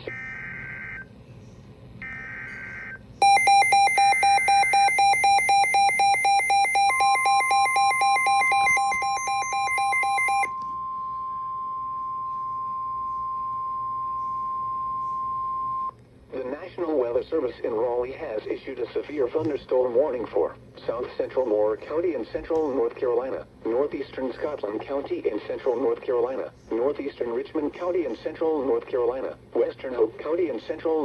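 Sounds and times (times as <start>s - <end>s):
rapidly pulsing electronic alarm beep: 0.0s - 1.1s, 2.0s - 15.9s
screechy two-pitch data bursts: 2.0s - 10.5s
steady single-pitch attention tone: 3.2s - 15.9s.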